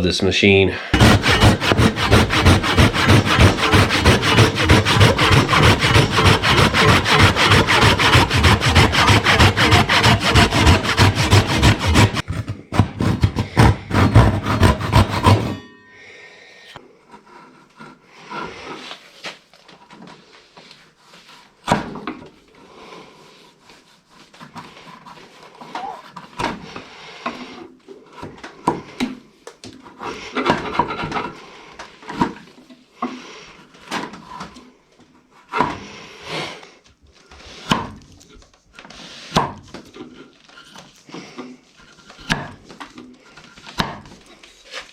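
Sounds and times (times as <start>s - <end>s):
chain mortiser cutting wood: 1.0s - 15.7s.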